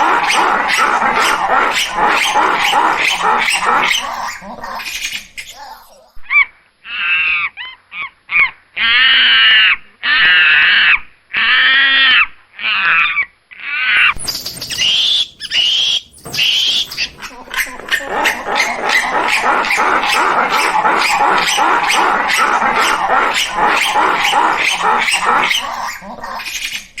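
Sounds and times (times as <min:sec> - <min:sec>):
monkey calling: 0:00.0 - 0:06.2, 0:14.0 - 0:27.0.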